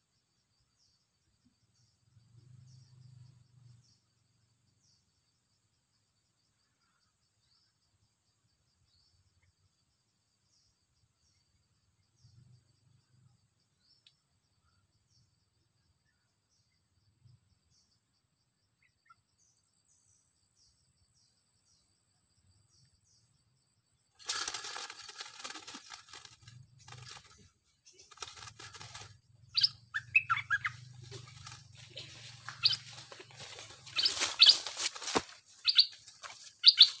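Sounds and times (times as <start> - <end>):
bird chirping: 24.2 - 37.0
rustling and fluttering: 24.2 - 37.0.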